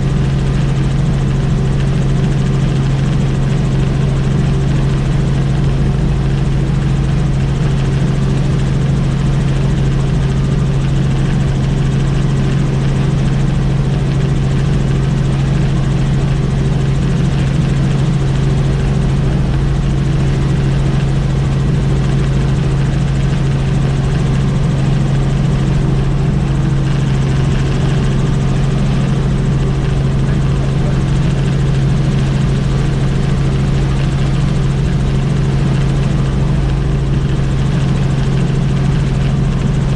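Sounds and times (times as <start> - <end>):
helicopter flying: 0.0 - 39.9.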